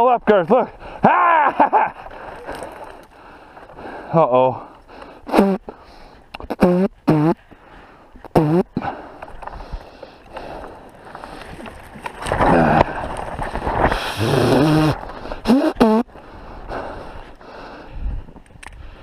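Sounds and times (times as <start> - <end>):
men calling out: 0.0 - 1.8.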